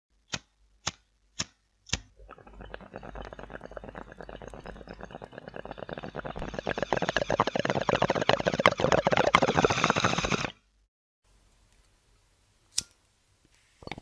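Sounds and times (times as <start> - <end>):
bong water bubbling and gurgling: 2.1 - 10.6.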